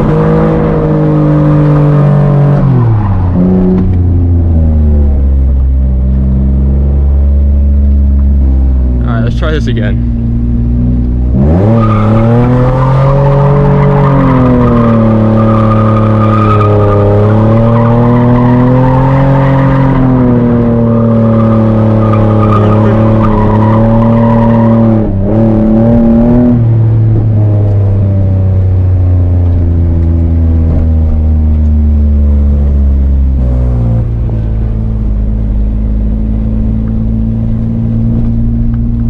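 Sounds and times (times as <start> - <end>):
car engine revving high: 0.0 - 39.0.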